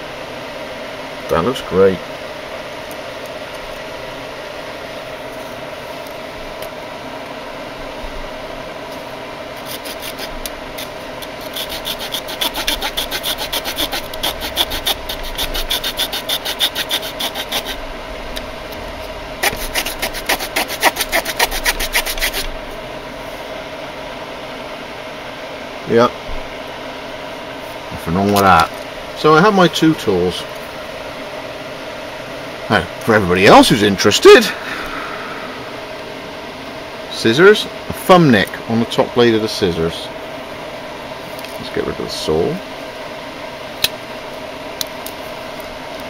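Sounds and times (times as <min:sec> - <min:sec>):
steady low hum: 0:00.0 - 0:46.0
saw blade rasping strokes: 0:09.6 - 0:17.8, 0:19.4 - 0:22.5.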